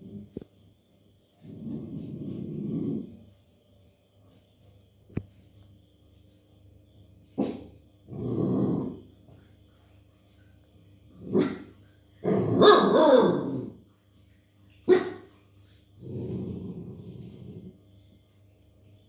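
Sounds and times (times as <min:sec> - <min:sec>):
dog growling: 0:01.4 - 0:03.3, 0:07.4 - 0:09.2, 0:11.1 - 0:13.8, 0:16.0 - 0:17.9
dog barking: 0:07.4 - 0:07.8, 0:11.3 - 0:13.7, 0:14.9 - 0:15.4.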